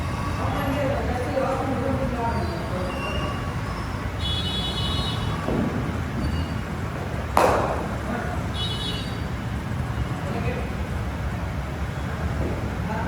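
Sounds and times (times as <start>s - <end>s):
sharp ringing crack: 7.4s - 9.2s.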